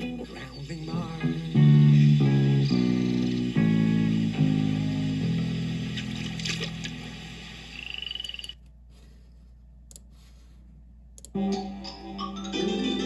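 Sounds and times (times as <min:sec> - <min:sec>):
music: 0:00.0 - 0:07.7, 0:11.3 - 0:13.0
sharp clicks: 0:08.0 - 0:08.8, 0:11.2 - 0:11.4.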